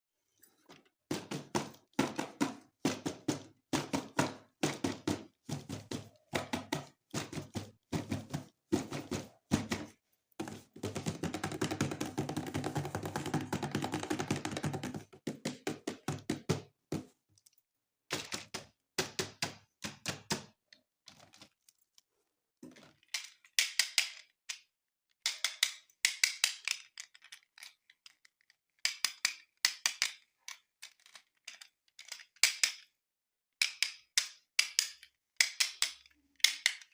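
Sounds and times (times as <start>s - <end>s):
toys and plastic packaging handled: 20.6s - 33.0s.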